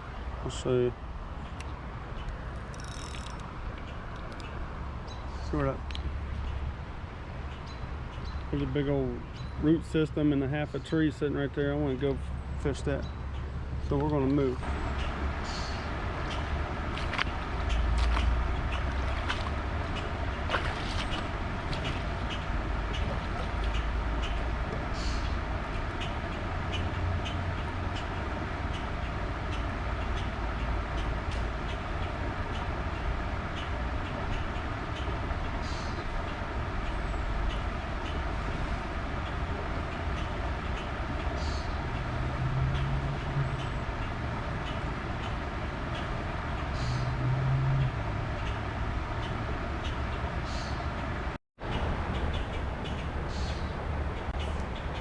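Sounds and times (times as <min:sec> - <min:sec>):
water rumbling in a creek: 0:14.8 - 0:26.5.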